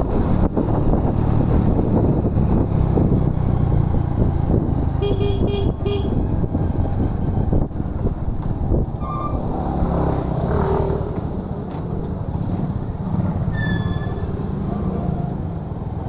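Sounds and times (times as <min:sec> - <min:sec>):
motorcycle engine rumble: 0:00.0 - 0:09.6
wind: 0:00.0 - 0:16.0
vehicle horn beeping: 0:05.0 - 0:06.3, 0:13.5 - 0:14.3.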